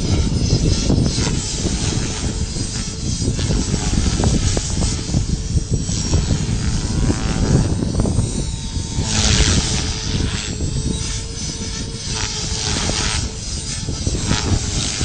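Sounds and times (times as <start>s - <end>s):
model helicopter rotor whine: 0.0s - 15.0s
wind rumble on microphone: 0.0s - 15.0s.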